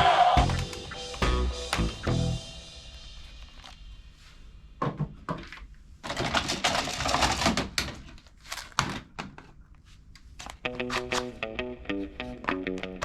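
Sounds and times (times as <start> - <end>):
music: 0.0 - 4.0, 10.7 - 13.0.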